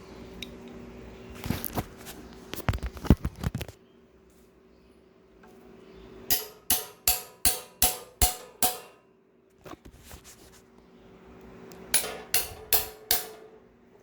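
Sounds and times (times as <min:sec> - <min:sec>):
hammer ringing on metal rod: 0:06.3 - 0:09.0, 0:12.0 - 0:13.6.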